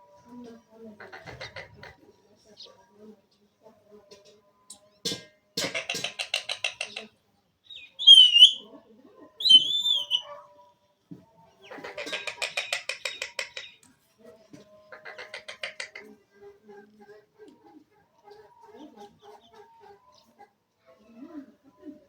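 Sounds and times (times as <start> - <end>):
parrot chattering: 7.8 - 8.6, 9.4 - 10.2
parrot squawks: 7.8 - 8.6, 9.4 - 10.3.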